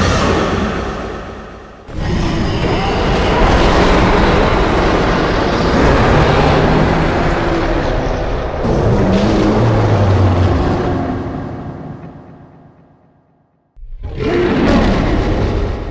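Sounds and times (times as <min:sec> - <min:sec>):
loud noisy rumbling: 0:00.0 - 0:12.7.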